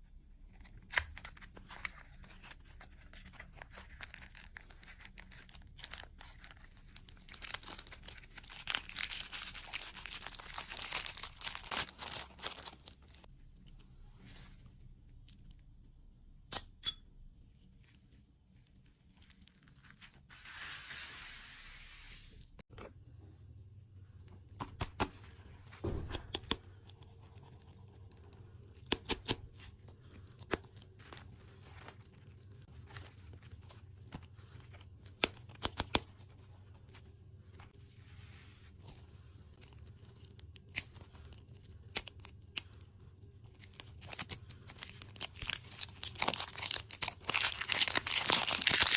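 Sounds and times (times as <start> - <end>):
crackles and clicks of eating: 26.2 - 37.8, 38.8 - 48.9.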